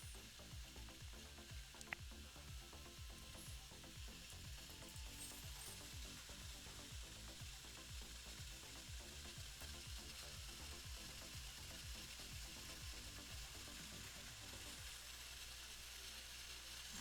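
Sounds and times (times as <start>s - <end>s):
recording hiss: 0.0s - 17.0s.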